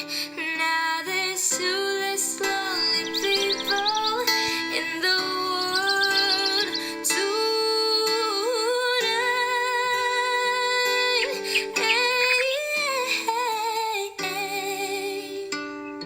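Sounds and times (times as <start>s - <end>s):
wordless melody with held notes: 0.0s - 16.0s
sustained chords: 2.2s - 8.3s.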